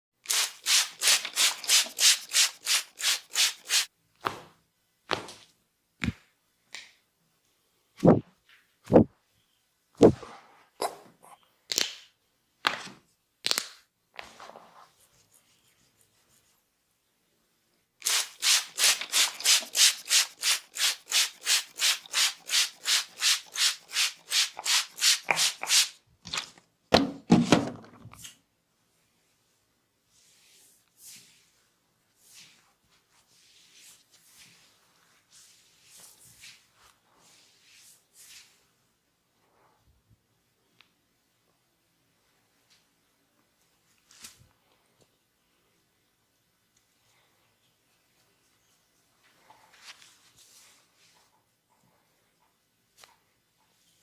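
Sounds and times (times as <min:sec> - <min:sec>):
hands rubbing skin: 0:00.3 - 0:03.9, 0:18.0 - 0:26.0.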